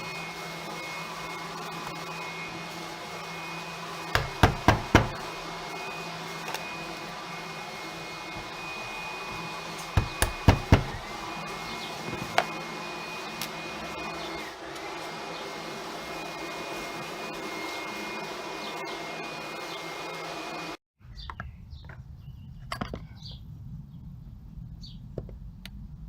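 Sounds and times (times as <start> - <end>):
steady hum: 0.0 - 18.4.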